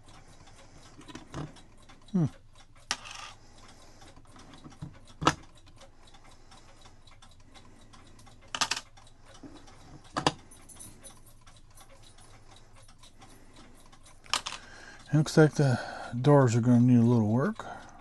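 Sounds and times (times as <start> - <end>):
clock ticking: 0.0 - 18.0
sharp clicks or knocks: 4.7 - 5.5.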